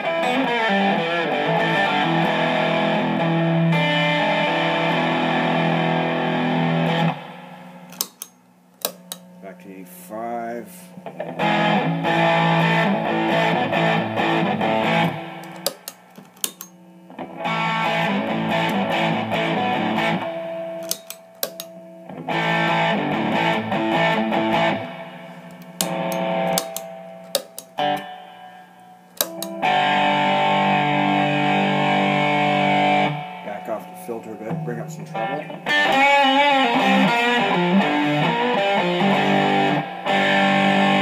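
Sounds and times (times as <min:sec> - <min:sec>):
distorted electric guitar chords: 0:00.0 - 0:09.8, 0:10.9 - 0:41.0
guitar string and pick clicks: 0:07.9 - 0:09.4, 0:13.8 - 0:16.8, 0:17.4 - 0:20.2, 0:20.8 - 0:24.8, 0:25.4 - 0:28.2, 0:29.1 - 0:30.8.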